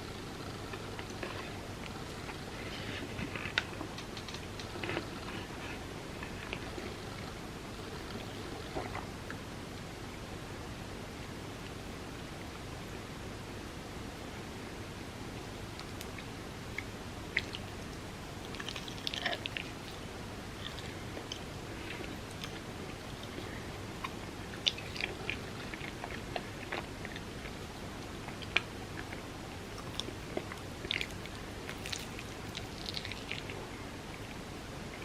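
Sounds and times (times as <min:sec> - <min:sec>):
crunchy crackles and clicks: 0:00.0 - 0:10.0, 0:15.4 - 0:35.0
steady low hiss: 0:00.0 - 0:35.0
person chewing and biting: 0:29.8 - 0:33.6.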